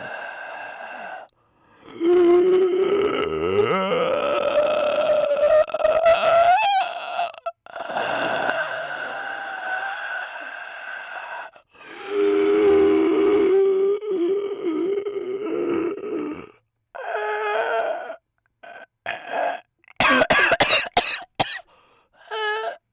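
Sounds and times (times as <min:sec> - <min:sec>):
person groaning snore-like noises: 0:00.0 - 0:10.4, 0:11.9 - 0:19.7.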